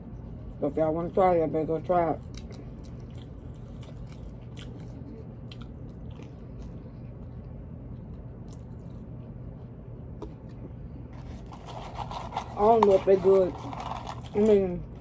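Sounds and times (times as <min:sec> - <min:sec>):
steady low hum: 0:00.0 - 0:15.0
person biting and chewing: 0:11.2 - 0:14.4.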